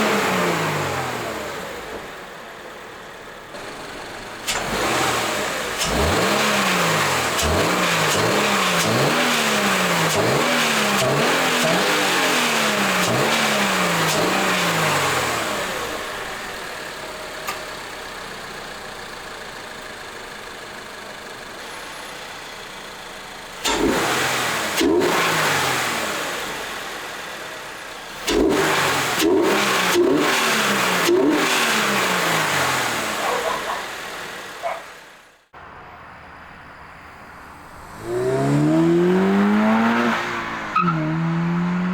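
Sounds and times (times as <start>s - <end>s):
car engine revving: 0.0s - 2.2s, 3.5s - 16.9s, 23.6s - 35.2s, 37.1s - 41.9s
car engine idling: 0.0s - 24.8s, 25.8s - 40.9s.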